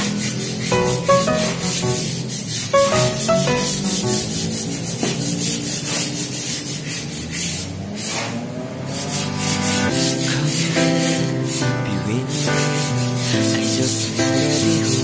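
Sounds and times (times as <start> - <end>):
rhythmic scraping strokes: 0.7 - 5.1
background music: 0.8 - 4.6.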